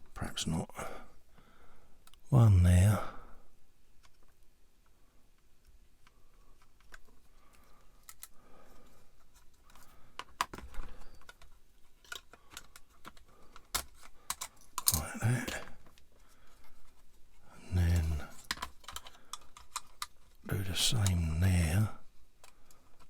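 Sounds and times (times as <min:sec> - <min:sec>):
plastic parts clicking and tapping: 0:05.4 - 0:08.4, 0:09.2 - 0:15.0, 0:18.0 - 0:20.4.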